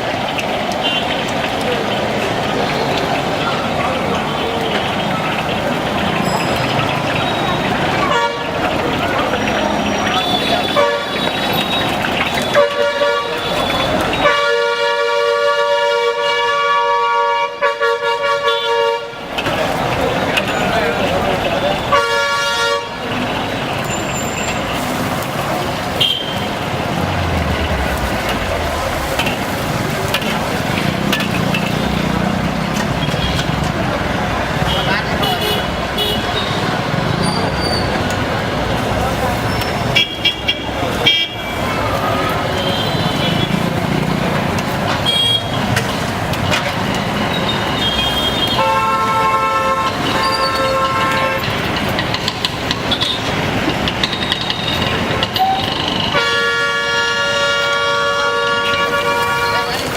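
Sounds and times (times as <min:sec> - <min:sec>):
road traffic noise: 0:00.0 - 0:59.9
vehicle horn blasts: 0:10.2 - 0:11.2, 0:12.4 - 0:19.2, 0:21.9 - 0:23.0, 0:47.8 - 0:51.5, 0:56.1 - 0:59.8
vehicle engine low rumble: 0:23.1 - 0:34.6.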